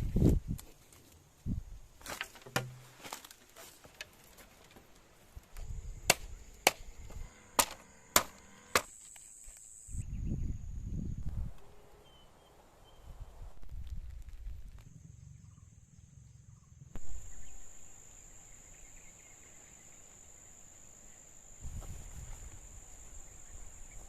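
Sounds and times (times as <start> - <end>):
blade chopping on wood: 6.1 - 6.9, 7.6 - 8.9.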